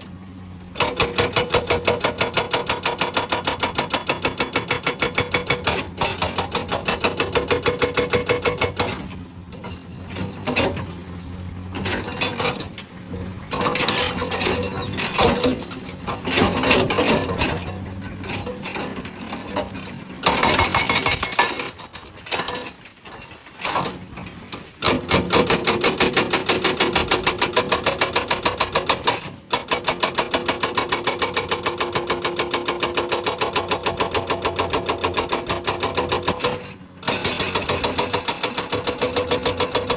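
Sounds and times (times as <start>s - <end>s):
excavator engine running: 0.0s - 39.9s
hydraulic breaker hammering rock: 0.7s - 39.9s.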